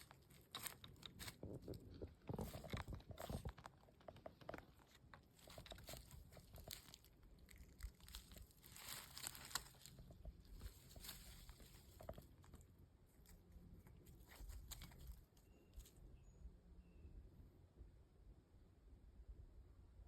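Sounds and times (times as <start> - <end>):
bird crunching in leaf litter: 0.0 - 15.4.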